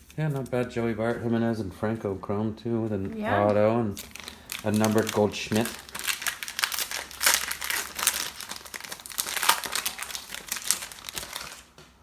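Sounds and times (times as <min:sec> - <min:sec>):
card wrappers crinkling: 0:03.4 - 0:11.8.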